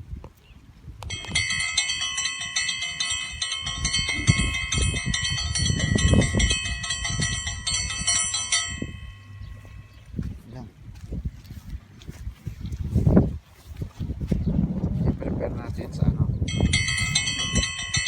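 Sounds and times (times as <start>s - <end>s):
wind gusting on microphone: 0.0s - 18.0s
bell-like chiming tones: 1.1s - 10.0s, 16.5s - 18.0s.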